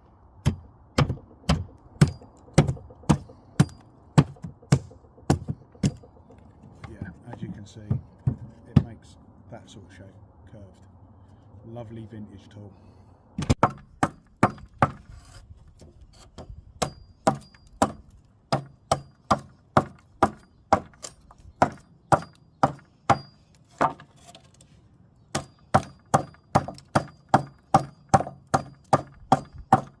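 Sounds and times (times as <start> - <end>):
adze chopping into wood: 0.4 - 6.1, 13.4 - 15.1, 16.3 - 24.1, 25.3 - 30.0.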